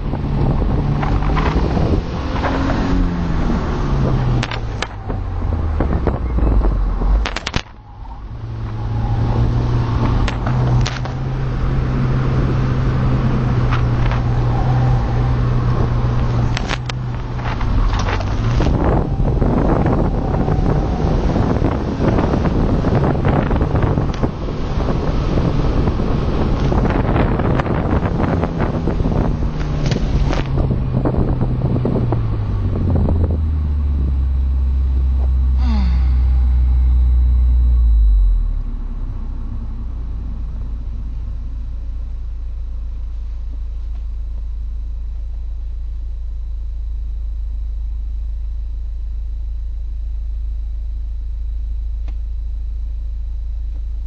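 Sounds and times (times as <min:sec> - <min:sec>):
car engine: 0:00.0 - 0:54.0
low engine drone: 0:00.0 - 0:54.0
wind and tyre noise: 0:00.0 - 0:54.0
engine idling: 0:30.6 - 0:54.0.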